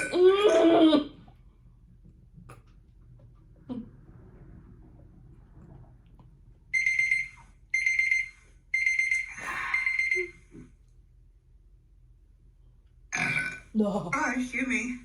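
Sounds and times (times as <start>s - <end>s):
electronic alarm beeping: 6.7s - 10.5s.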